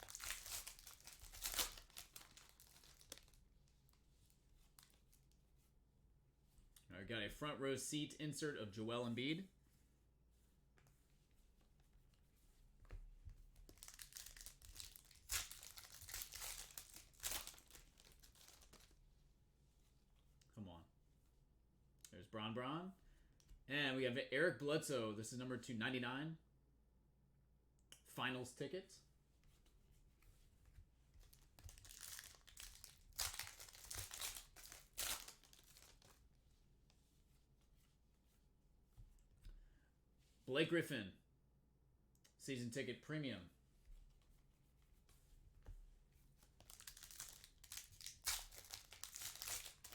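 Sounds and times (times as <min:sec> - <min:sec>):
foil wrapper crinkling and tearing: 0:00.0 - 0:04.0, 0:13.6 - 0:19.0, 0:31.3 - 0:36.2, 0:46.6 - 0:49.9.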